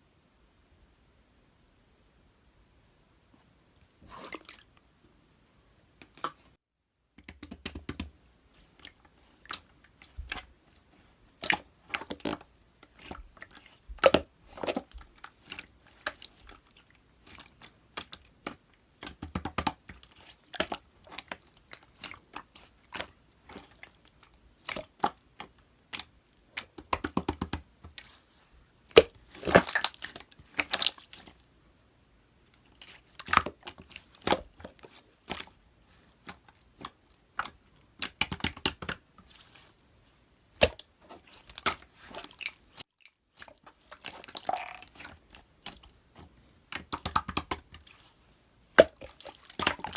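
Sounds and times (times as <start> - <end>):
slime squished by hand: 28.9 - 31.4, 43.4 - 49.9.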